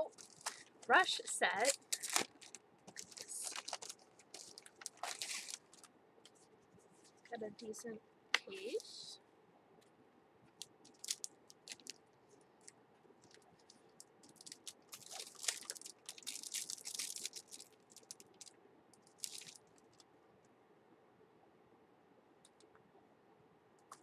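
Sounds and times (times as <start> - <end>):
plastic packaging crinkling: 0.0 - 5.9, 10.6 - 12.0, 12.6 - 20.0.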